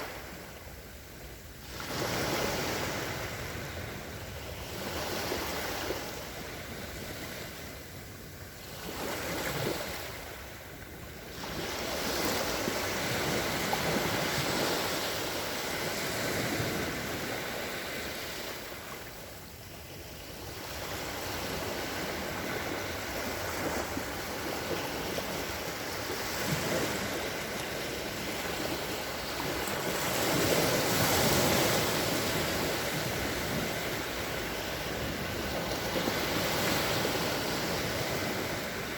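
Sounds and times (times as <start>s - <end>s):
sea waves washing onto shore: 20.3s - 38.9s.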